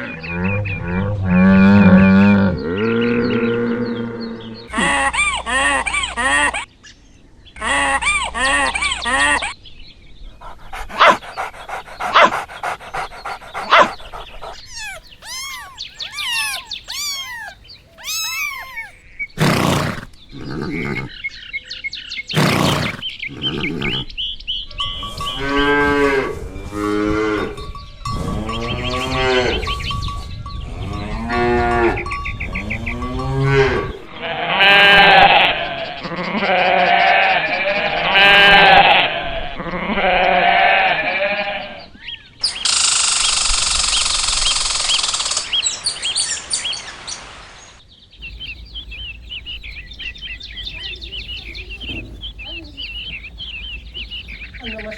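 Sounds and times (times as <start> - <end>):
cattle mooing: 14.8 - 18.9, 48.2 - 54.9.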